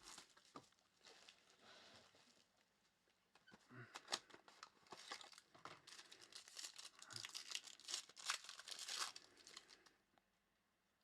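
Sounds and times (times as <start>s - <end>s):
card pack wrapper tearing and crinkling: 4.9s - 9.9s.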